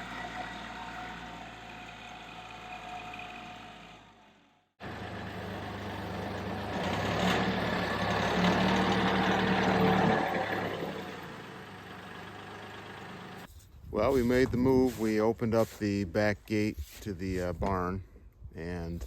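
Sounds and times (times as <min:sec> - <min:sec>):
vehicle engine passing by: 0:00.0 - 0:13.5.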